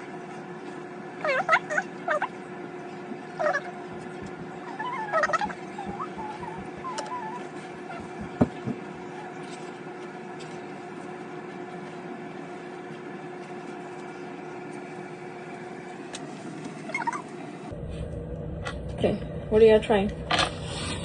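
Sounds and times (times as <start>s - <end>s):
machine humming: 0.0s - 21.0s
knock: 8.1s - 8.8s.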